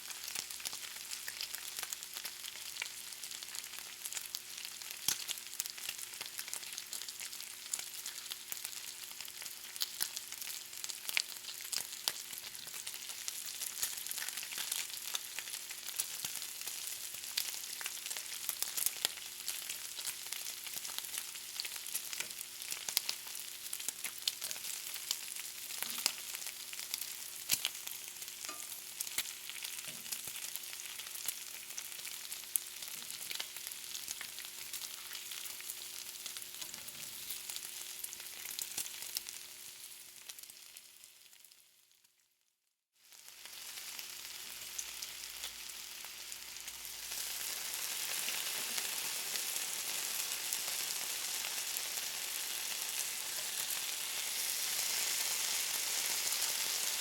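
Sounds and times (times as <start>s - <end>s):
bacon sizzling in a pan: 0.0s - 42.2s, 43.0s - 57.0s.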